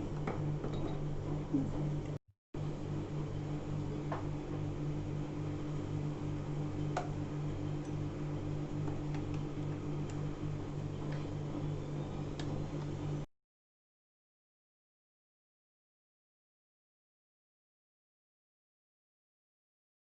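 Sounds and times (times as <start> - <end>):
coffee maker humming: 0.0 - 13.3.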